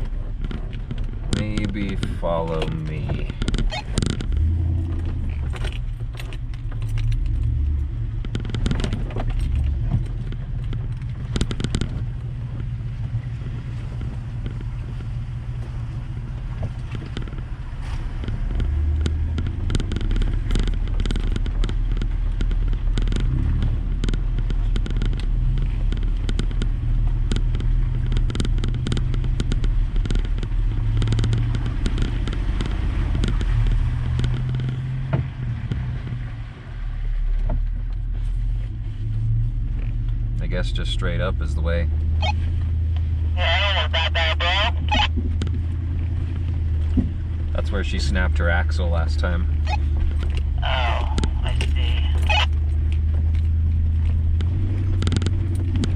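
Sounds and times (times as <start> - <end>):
knocks and rattles: 0.0 - 15.8, 16.4 - 36.1, 52.6 - 55.9
engine running at low revs: 0.0 - 55.9.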